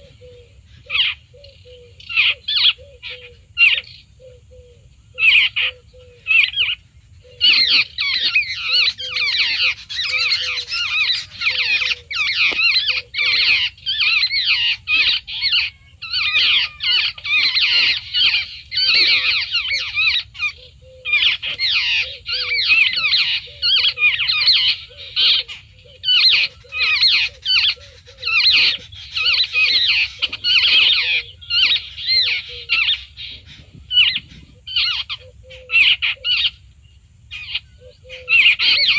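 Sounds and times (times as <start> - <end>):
babblers chattering squawks: 7.4 - 36.6.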